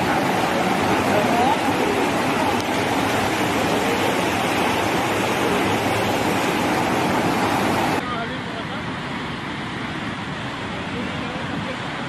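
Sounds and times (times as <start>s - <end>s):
fast-flowing floodwater rushing: 0.0s - 12.0s.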